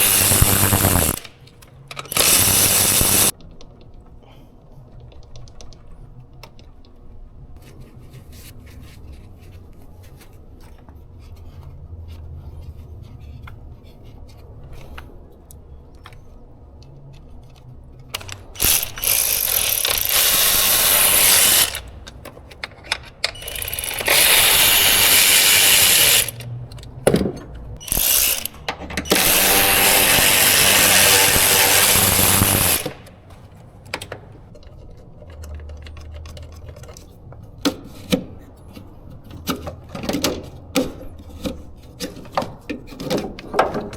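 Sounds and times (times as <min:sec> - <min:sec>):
power tool bursts: 0:00.0 - 0:01.4, 0:02.0 - 0:03.3, 0:18.2 - 0:22.0, 0:23.3 - 0:26.4, 0:27.8 - 0:33.1
ratchet wrench clicking: 0:00.0 - 0:03.3, 0:18.2 - 0:22.2, 0:22.8 - 0:26.9, 0:27.8 - 0:33.1.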